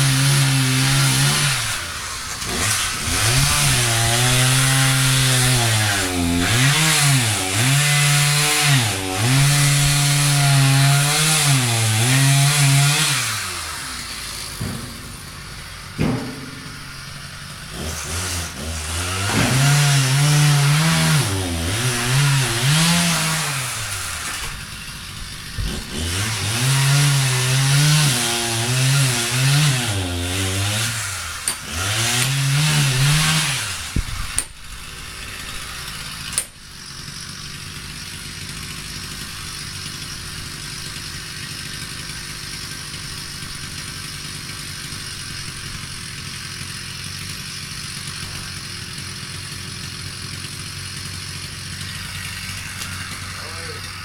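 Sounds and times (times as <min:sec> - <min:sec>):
chainsaw engine revving: 0:00.0 - 0:54.0
chainsaw idling: 0:00.0 - 0:54.0
sharp knocks: 0:14.4 - 0:17.4, 0:19.2 - 0:19.8.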